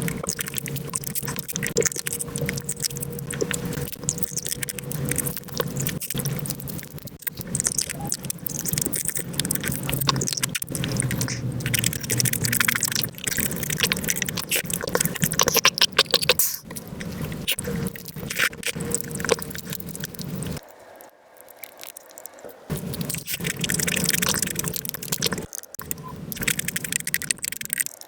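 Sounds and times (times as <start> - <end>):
wet chewing and slurping: 0.0 - 28.0.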